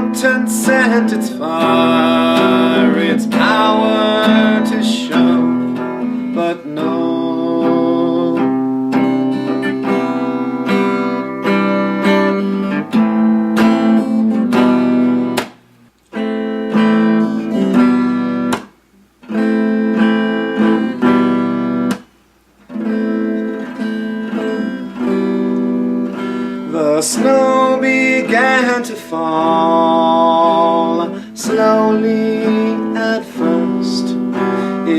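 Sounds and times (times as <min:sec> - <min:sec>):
acoustic guitar strumming chords: 0:00.0 - 0:34.9.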